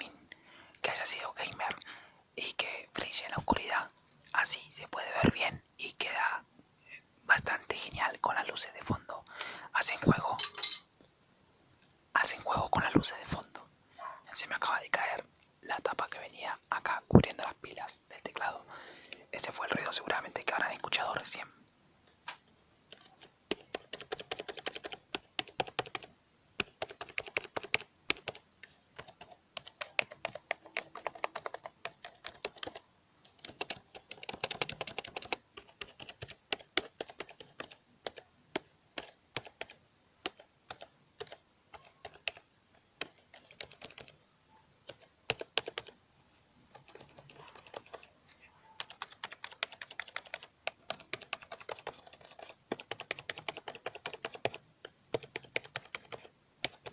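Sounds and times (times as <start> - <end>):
keyboard keys clicking: 22.9 - 42.4, 43.0 - 44.1, 44.9 - 45.9, 46.7 - 48.1, 48.8 - 56.9.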